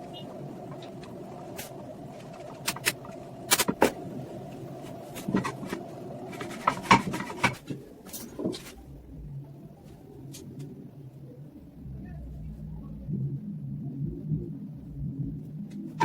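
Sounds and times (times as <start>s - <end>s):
low hum: 0.0s - 16.0s
hard parts clicking and knocking: 5.1s - 8.7s.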